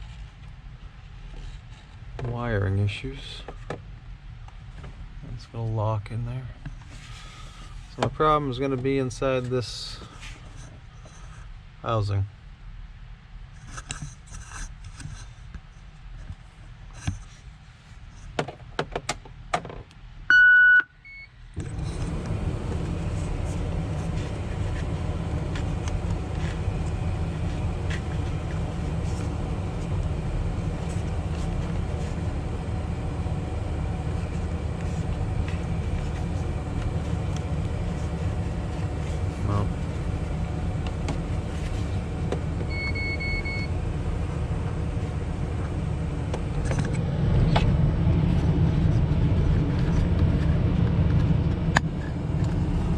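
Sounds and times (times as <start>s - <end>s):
wheel loader running hum: 21.6s - 52.9s.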